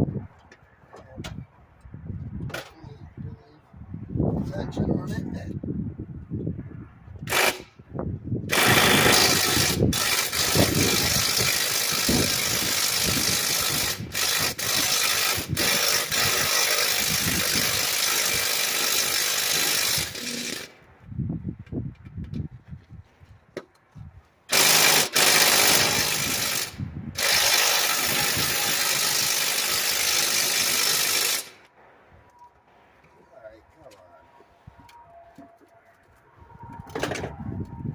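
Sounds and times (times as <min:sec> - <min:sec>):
power tool running: 0:07.3 - 0:07.6, 0:08.5 - 0:20.7, 0:24.5 - 0:31.6.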